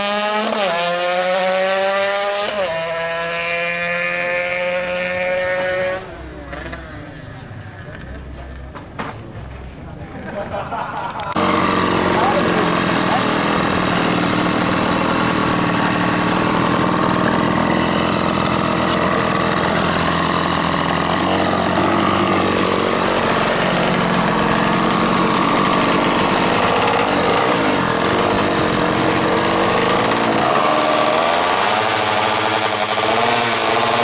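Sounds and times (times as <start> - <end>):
two-stroke engine running: 0.0 - 5.7, 11.3 - 34.0.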